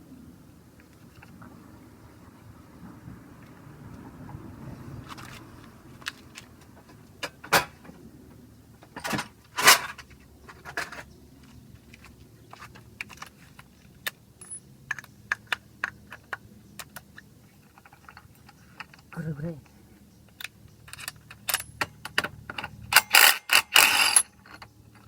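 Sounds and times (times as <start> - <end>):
metal parts clinking and clanking: 9.0 - 11.1, 12.5 - 17.0, 20.3 - 25.0.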